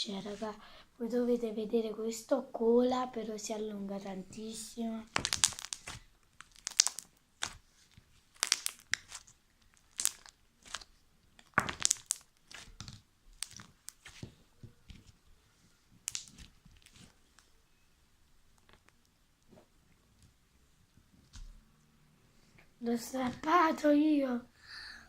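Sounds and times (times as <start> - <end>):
slime crackling and snapping: 5.1 - 14.4, 16.0 - 17.5.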